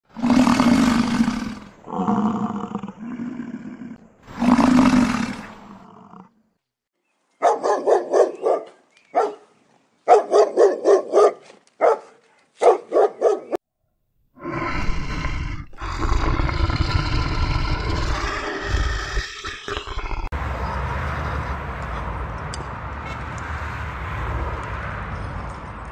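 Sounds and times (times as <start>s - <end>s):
deep roar: 0.1s - 6.4s, 14.4s - 20.3s
dog barking: 7.4s - 13.6s.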